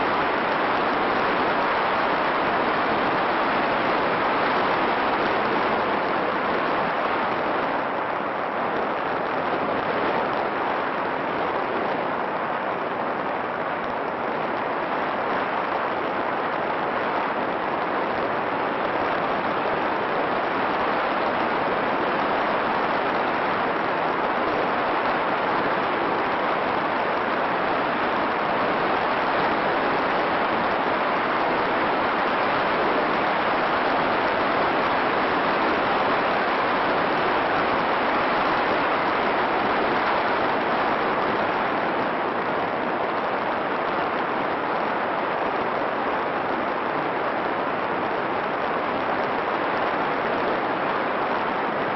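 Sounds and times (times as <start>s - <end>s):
steady hiss: 0.0s - 51.9s.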